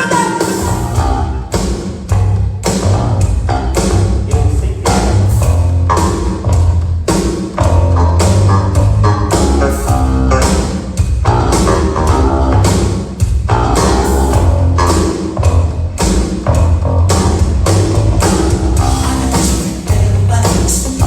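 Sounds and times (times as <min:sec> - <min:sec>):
drum kit beat: 0:00.0 - 0:21.0
heavy bass line: 0:00.0 - 0:21.0
electric guitar: 0:07.5 - 0:21.0.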